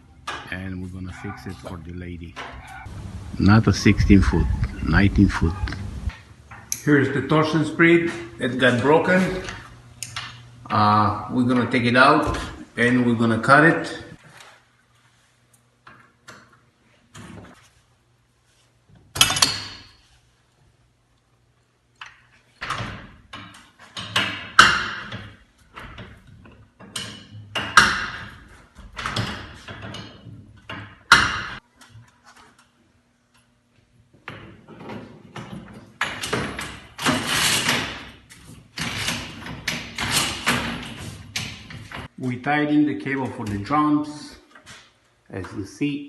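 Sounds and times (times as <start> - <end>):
metal tools clanking and banging: 22.6 - 31.6.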